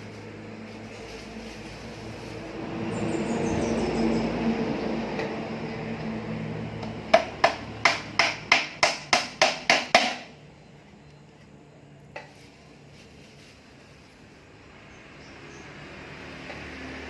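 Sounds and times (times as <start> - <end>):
mechanical hum: 0.0 - 17.0
hammer strikes: 6.8 - 10.3.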